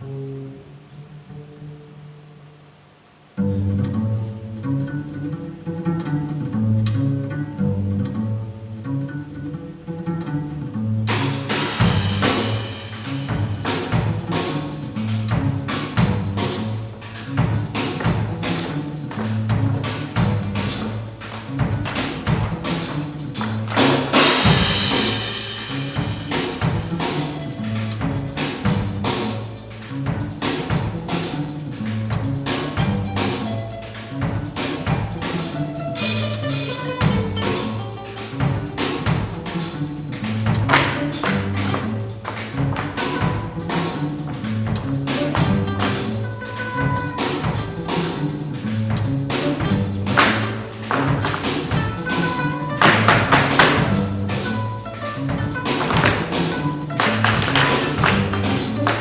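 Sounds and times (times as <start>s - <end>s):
sustained low music notes: 0.0s - 59.0s
low bass line: 3.4s - 59.0s
drum hits: 11.1s - 59.0s
sharp percussive strikes: 11.1s - 59.0s
cymbal crash: 11.2s - 18.5s, 23.6s - 29.6s.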